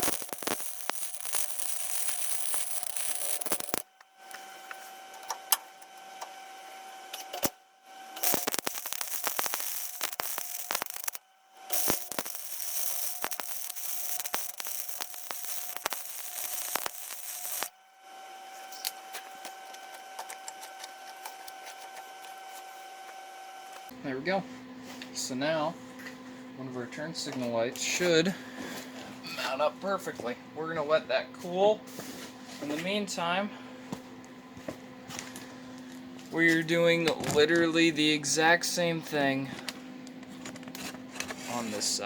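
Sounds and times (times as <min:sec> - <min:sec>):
electric welder crackling: 0:00.0 - 0:04.4, 0:08.2 - 0:17.8
steady hum: 0:00.0 - 0:04.7, 0:07.4 - 0:18.6.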